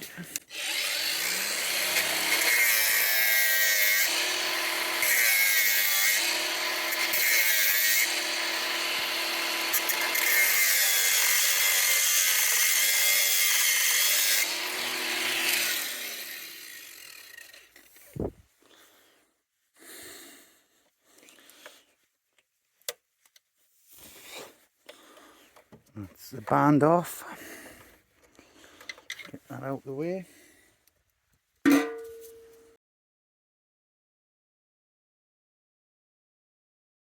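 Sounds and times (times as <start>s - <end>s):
power tool cutting: 0.3s - 17.7s.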